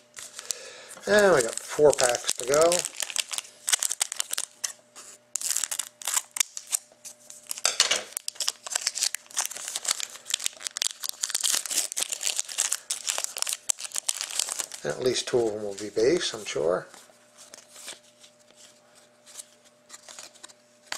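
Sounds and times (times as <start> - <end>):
foil wrapper crinkling: 0.0 - 20.9
foil wrapper ripping: 0.2 - 4.8, 5.4 - 16.7.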